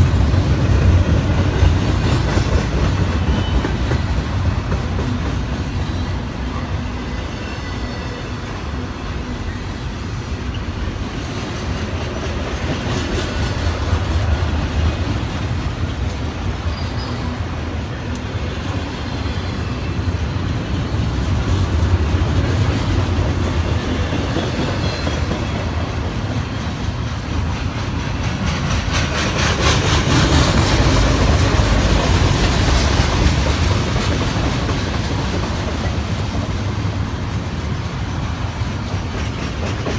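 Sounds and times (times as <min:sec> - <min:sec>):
train wheels rumbling on rails: 0:00.0 - 0:39.9.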